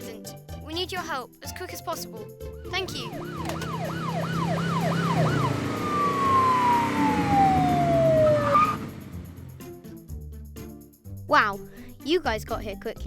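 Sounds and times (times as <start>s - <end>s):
police siren yelping: 2.7s - 9.4s
vehicle engine rumble: 2.9s - 9.9s.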